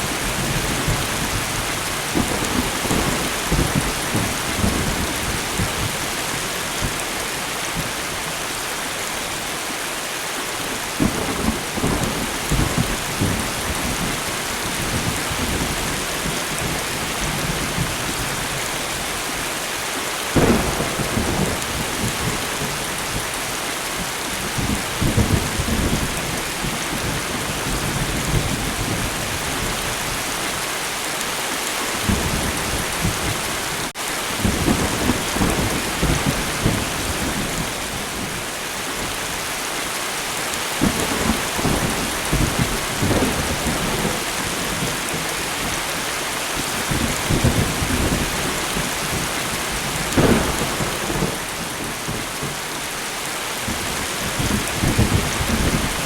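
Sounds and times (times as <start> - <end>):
thunder rumbling: 0.2 - 6.0, 20.4 - 23.3, 40.8 - 45.7, 46.6 - 52.6.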